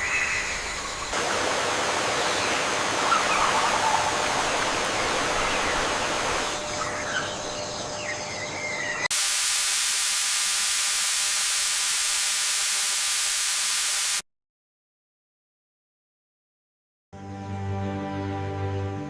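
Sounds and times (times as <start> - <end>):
loud steady hiss: 1.1 - 6.6, 9.1 - 14.2.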